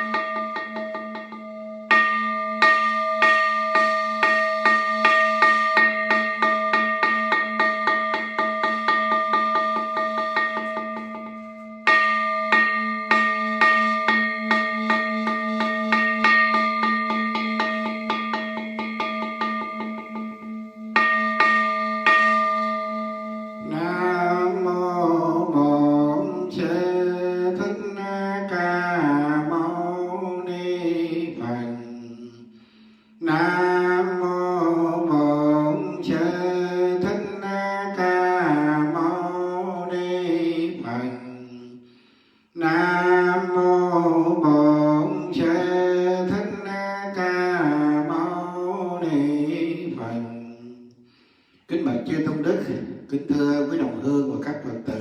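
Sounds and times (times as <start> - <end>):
person chanting: 0.0 - 32.6, 33.2 - 41.9, 42.6 - 51.0, 51.7 - 55.0
temple bell strokes ringing: 0.0 - 39.1.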